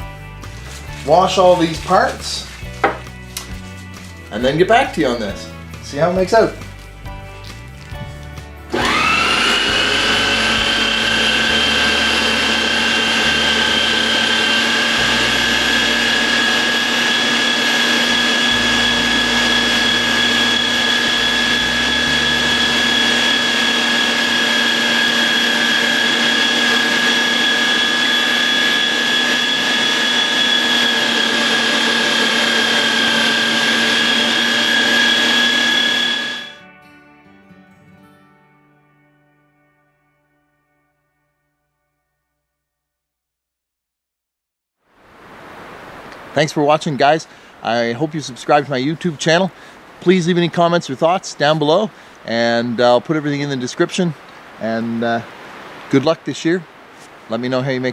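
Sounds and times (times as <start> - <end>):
meat grinder motor whine: 8.7 - 36.6.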